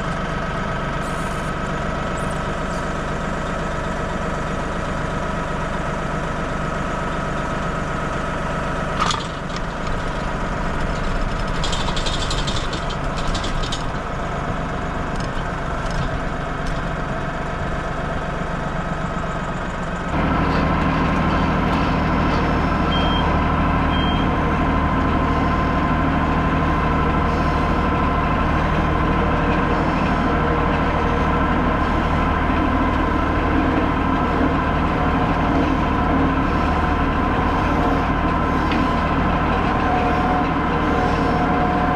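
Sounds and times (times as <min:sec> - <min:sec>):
tractor diesel engine running: 0:00.0 - 0:41.9
short high beeps: 0:22.9 - 0:23.3, 0:23.9 - 0:24.3.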